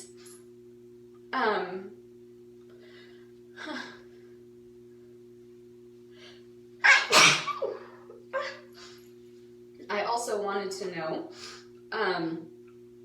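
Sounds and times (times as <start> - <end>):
woman sneezing: 6.8 - 7.8.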